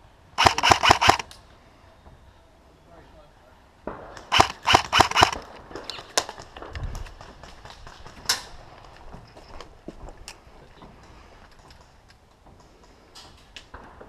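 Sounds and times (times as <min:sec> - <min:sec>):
sharp cracks: 0:00.4 - 0:01.4, 0:03.9 - 0:08.6.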